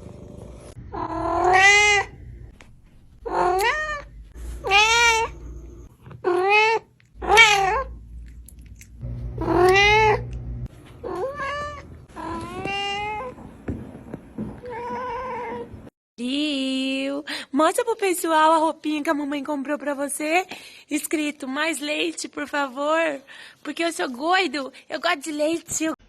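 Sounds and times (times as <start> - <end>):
cat meowing: 0.9 - 2.2, 3.2 - 5.4, 6.2 - 8.0, 9.4 - 10.3, 11.0 - 13.3.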